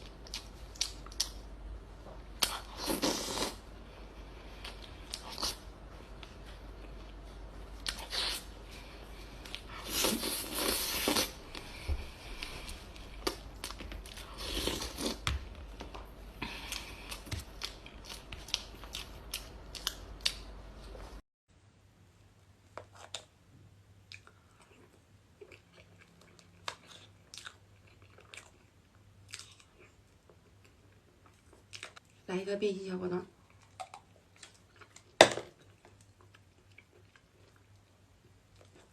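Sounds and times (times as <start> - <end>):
person chewing food: 0.0 - 1.6, 2.2 - 21.1, 24.0 - 32.2, 33.4 - 38.9
crackly eating sounds: 0.0 - 21.2, 22.6 - 32.3, 33.3 - 38.9.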